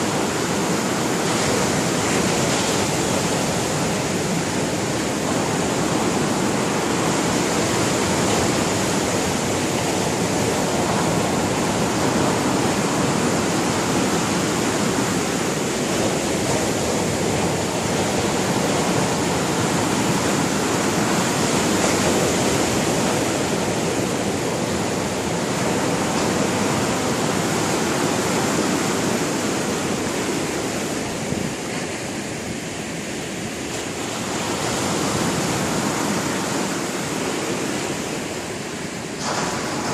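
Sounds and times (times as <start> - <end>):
waves breaking on shore: 0.0 - 39.9.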